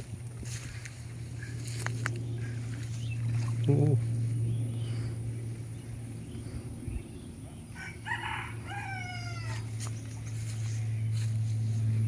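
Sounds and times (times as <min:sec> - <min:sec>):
steady low hum: 0:00.0 - 0:12.0
rooster crowing: 0:07.7 - 0:09.8.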